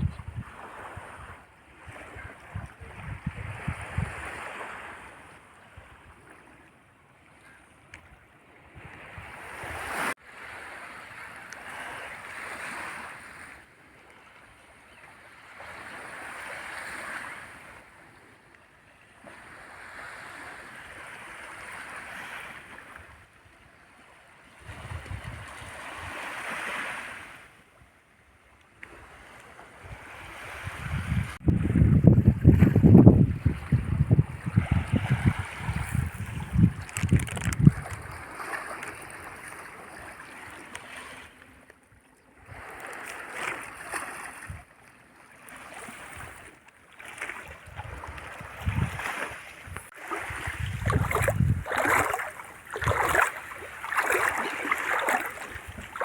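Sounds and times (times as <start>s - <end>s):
wind buffeting microphone: 0.0s - 1.4s, 2.2s - 4.5s, 24.6s - 26.1s, 29.8s - 38.3s, 47.6s - 56.0s
sea waves washing onto beach: 42.4s - 56.0s.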